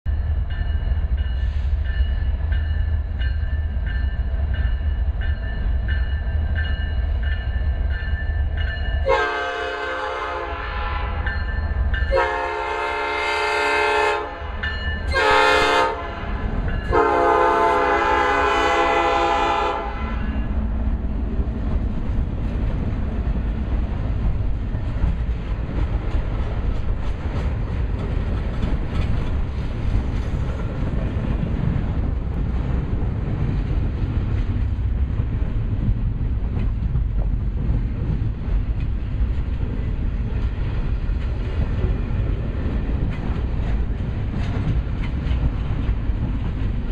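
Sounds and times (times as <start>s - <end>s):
diesel locomotive rumbling: 0.0s - 46.9s
train air horn blasts: 9.0s - 11.4s, 12.1s - 20.5s.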